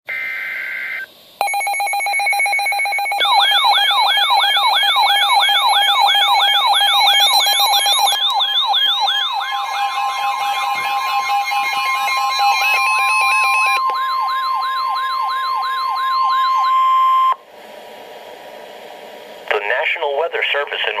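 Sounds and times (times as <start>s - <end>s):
steady warning tone: 0.1s - 17.4s
fast-pulsing alarm tone: 0.2s - 17.4s
warbling two-tone data burst: 3.1s - 13.9s
siren-like falling sweep: 3.2s - 17.4s.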